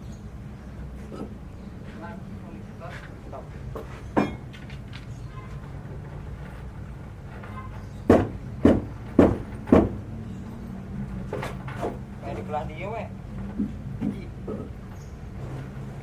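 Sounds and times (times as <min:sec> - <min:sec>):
sharp knocks: 0:08.1 - 0:10.1.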